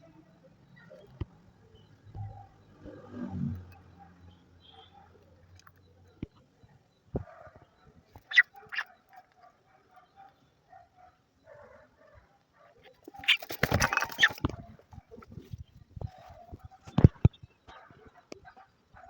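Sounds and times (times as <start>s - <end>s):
chickens clucking: 5.0s - 9.4s, 12.8s - 18.6s
chickens squawking: 8.1s - 9.0s, 12.8s - 15.5s.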